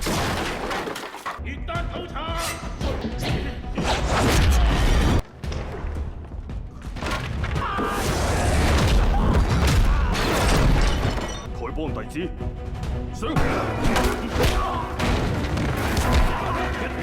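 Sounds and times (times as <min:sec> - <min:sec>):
clattering impacts: 0:00.0 - 0:01.4
music: 0:01.3 - 0:17.0.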